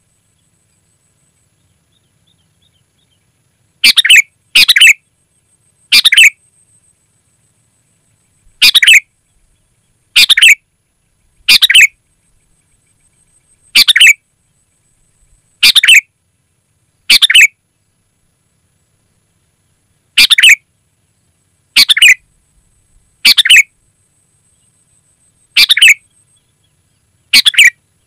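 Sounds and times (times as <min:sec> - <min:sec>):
bird calling: 0:03.8 - 0:05.0, 0:05.9 - 0:06.4, 0:08.5 - 0:09.5, 0:10.1 - 0:10.6, 0:11.4 - 0:14.2, 0:15.6 - 0:16.1, 0:17.1 - 0:17.5, 0:20.2 - 0:20.6, 0:21.8 - 0:22.2, 0:23.2 - 0:23.7, 0:25.5 - 0:27.8.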